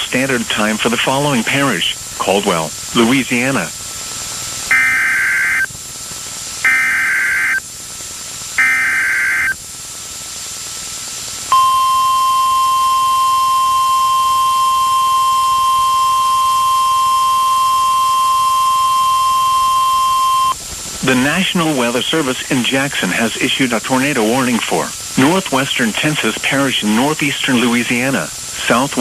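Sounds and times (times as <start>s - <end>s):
screechy digital data bursts: 4.7s - 5.7s, 6.6s - 7.6s, 8.6s - 9.6s
steady warning alarm tone: 4.7s - 5.7s, 6.6s - 7.7s, 8.6s - 9.6s, 11.5s - 22.2s.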